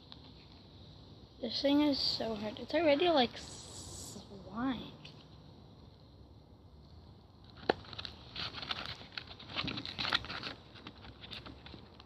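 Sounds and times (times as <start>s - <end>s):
slime crackling and crinkling: 7.4s - 12.0s.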